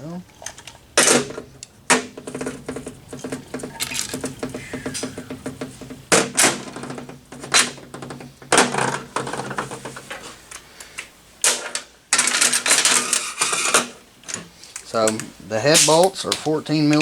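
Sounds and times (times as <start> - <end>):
impact wrench hammering: 1.0 - 9.4.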